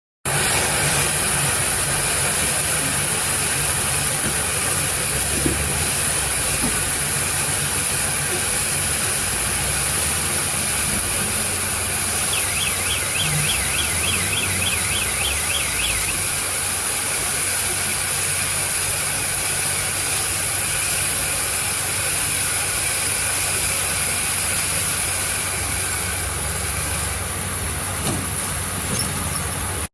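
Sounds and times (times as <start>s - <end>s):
baling machine running: 0.3s - 29.9s
high chirps: 12.0s - 16.4s.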